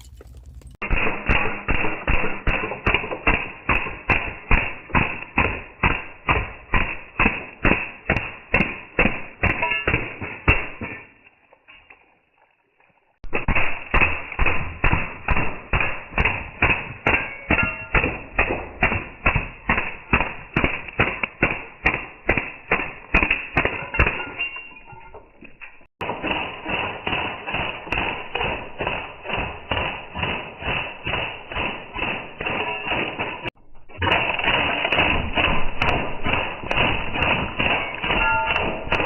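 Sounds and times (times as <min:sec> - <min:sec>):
automatic bb gun firing: 0:00.8 - 0:10.7, 0:26.0 - 0:39.0.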